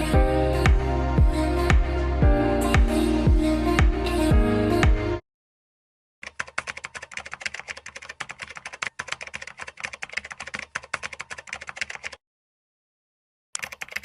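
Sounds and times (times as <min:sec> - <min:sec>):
rapid keyboard typing: 0:06.2 - 0:12.2, 0:13.6 - 0:14.0.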